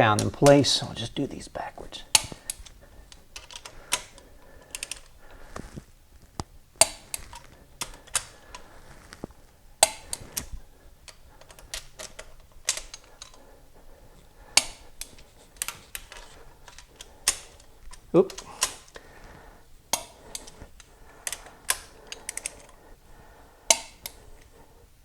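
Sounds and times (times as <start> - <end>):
torque wrench clicking: 9.8 - 10.5, 14.6 - 19.0, 23.7 - 24.5.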